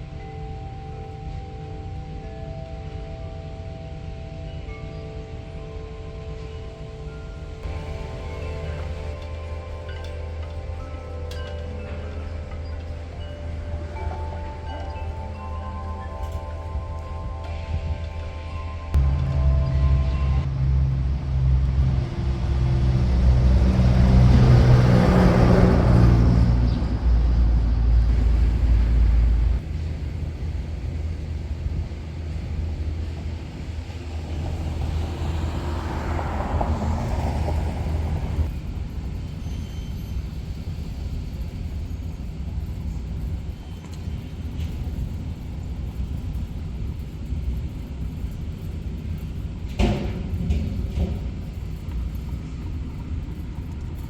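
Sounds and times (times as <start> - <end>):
traffic rumble: 1.0 - 54.0
vehicle passing by: 18.5 - 29.6, 33.7 - 38.5.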